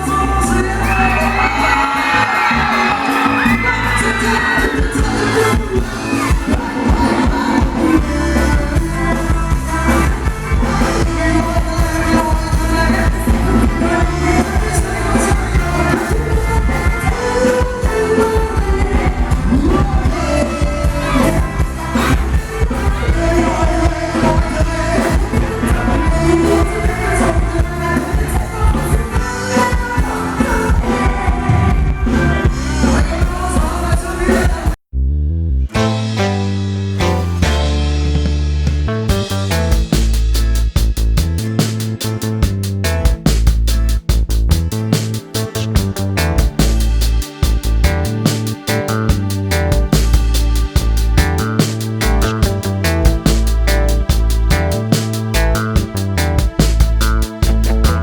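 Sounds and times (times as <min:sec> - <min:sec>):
live band dance music: 0:00.0 - 0:34.8, 0:35.7 - 0:58.0
person singing: 0:00.0 - 0:34.8.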